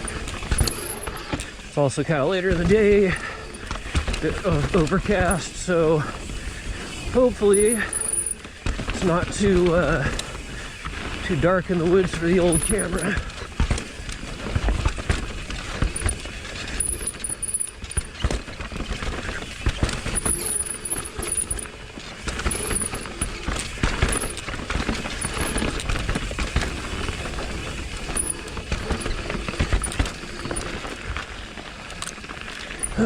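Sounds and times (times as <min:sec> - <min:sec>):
bike knocks and rattles: 0:00.0 - 0:01.6, 0:09.8 - 0:33.0
bike tyres on dirt trail: 0:00.0 - 0:33.0.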